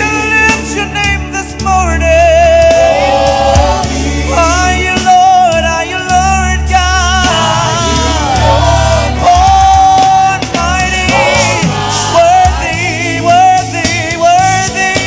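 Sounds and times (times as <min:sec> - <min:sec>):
band accompaniment: 0:00.0 - 0:15.0
choir singing held notes: 0:02.4 - 0:06.2, 0:07.0 - 0:15.0.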